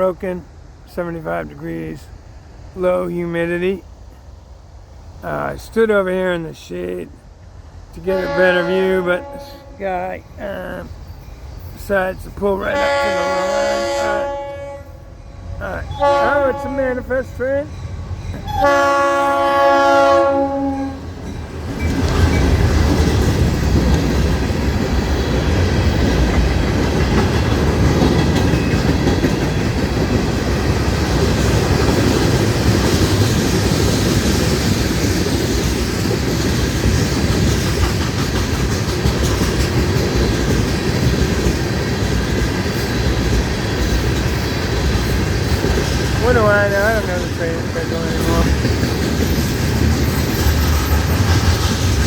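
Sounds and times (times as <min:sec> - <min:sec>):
freight train rumbling on rails: 0:00.0 - 0:52.0
train horn blast: 0:08.0 - 0:09.8, 0:12.6 - 0:17.1, 0:18.4 - 0:21.1.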